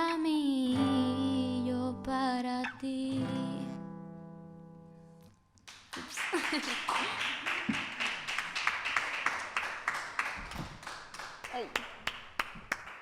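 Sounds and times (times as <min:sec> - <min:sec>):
hands clapping in applause: 0:05.6 - 0:13.0.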